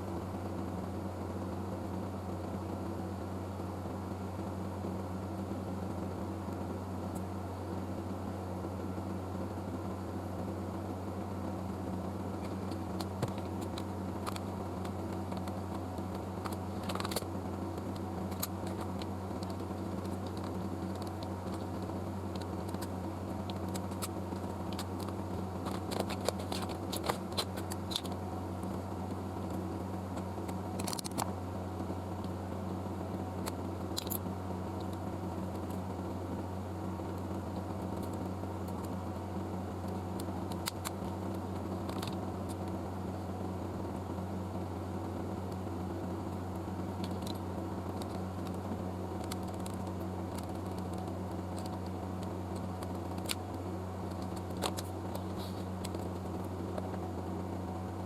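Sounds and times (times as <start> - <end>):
steady machine hum: 0.0 - 58.0
light clicks and taps: 12.4 - 28.8, 47.0 - 57.1.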